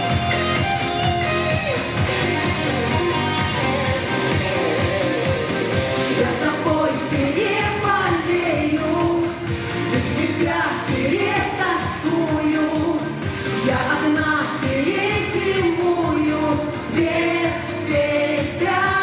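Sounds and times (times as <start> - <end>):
guitar accompaniment: 0.0 - 19.0
person singing: 0.0 - 19.0.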